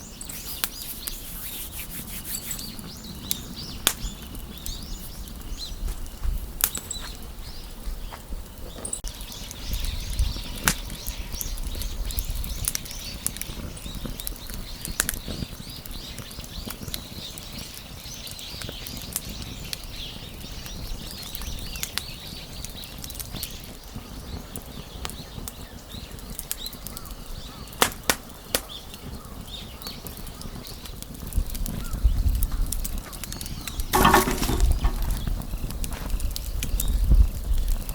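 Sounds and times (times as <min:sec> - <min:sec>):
wood fire crackling and popping: 0:00.0 - 0:37.9.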